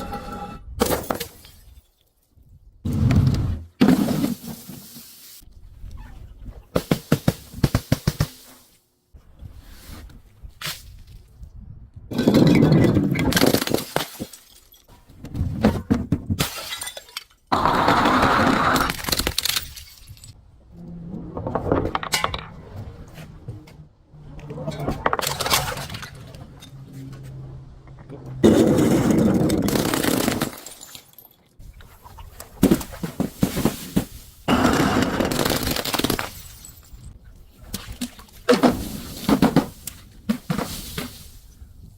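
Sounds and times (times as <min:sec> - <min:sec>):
glass crushing and shattering: 0:12.1 - 0:14.9, 0:16.4 - 0:17.5, 0:18.9 - 0:20.4, 0:28.6 - 0:31.6, 0:35.2 - 0:37.2
broken glass crackling and grinding: 0:28.4 - 0:31.4.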